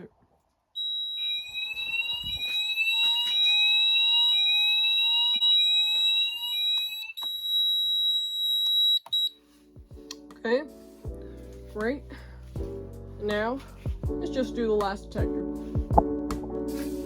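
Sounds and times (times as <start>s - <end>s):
rising alarm sweep: 0.8s - 9.3s
steady high-pitched alarm tone: 0.8s - 9.3s.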